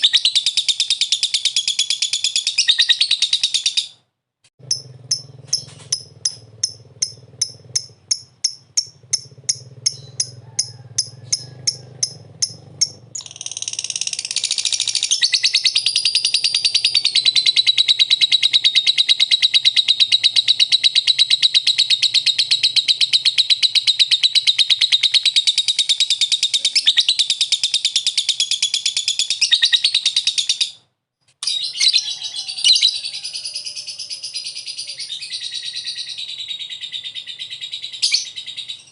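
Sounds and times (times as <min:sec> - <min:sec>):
bird chattering trill: 0:00.0 - 0:04.0, 0:04.6 - 0:30.8
bird chirping sharply: 0:04.6 - 0:30.8.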